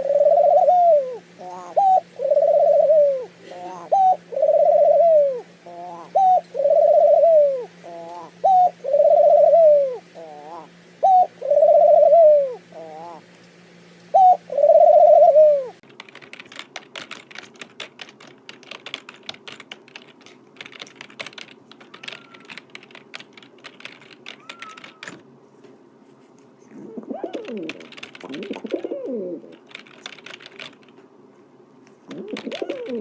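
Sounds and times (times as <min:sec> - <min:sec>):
dove cooing: 0:00.0 - 0:13.3, 0:14.1 - 0:15.8, 0:24.2 - 0:25.2, 0:26.7 - 0:30.6, 0:32.1 - 0:33.0.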